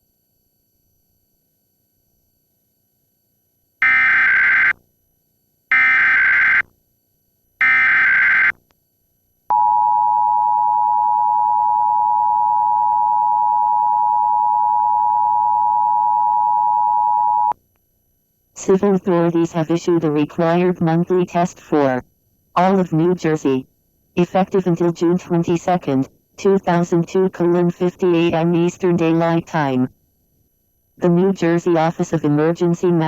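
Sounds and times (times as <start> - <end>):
two-tone alarm: 3.8 - 4.8, 5.7 - 6.7, 7.6 - 8.6, 9.5 - 17.6
screeching data tone: 7.6 - 8.6.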